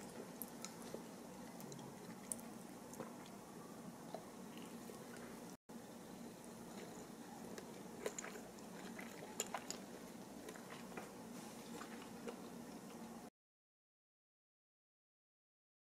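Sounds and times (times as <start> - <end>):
faint room hum: 0.0 - 13.3
person chewing crunchy food: 6.6 - 13.0.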